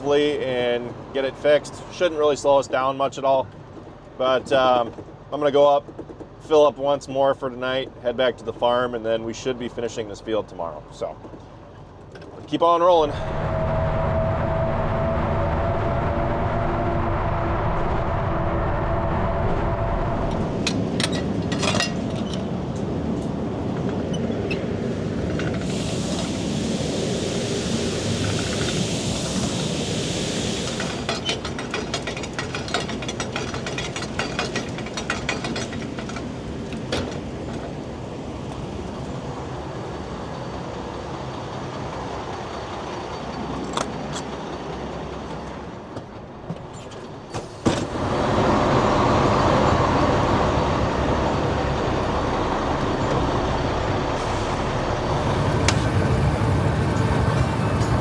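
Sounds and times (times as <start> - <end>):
farm vehicle running: 25.5 - 37.2, 47.4 - 58.0
clattering rattles: 30.9 - 36.4.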